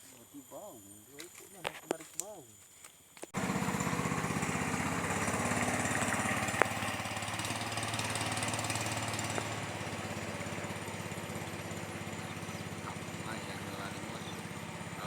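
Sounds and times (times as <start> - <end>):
sharp click: 1.2 - 3.4
small engine running: 3.4 - 15.0.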